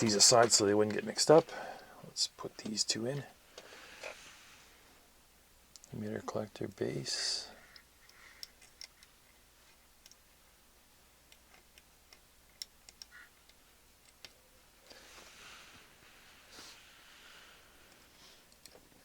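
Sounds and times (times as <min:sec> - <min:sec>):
small clicks and ticks: 0:07.6 - 0:09.2, 0:10.0 - 0:10.3, 0:11.2 - 0:15.0, 0:17.9 - 0:19.0
soft handling rustle: 0:14.8 - 0:19.0.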